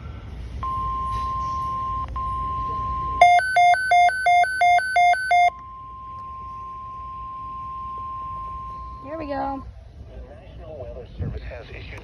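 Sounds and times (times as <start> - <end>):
two-pitch electronic alarm beeping: 0.0 - 9.4
steady warning tone: 0.0 - 9.6.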